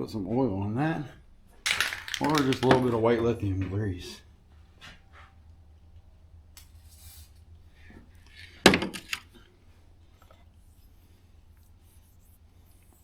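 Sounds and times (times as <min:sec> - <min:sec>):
sharp clack: 0:01.7 - 0:03.0.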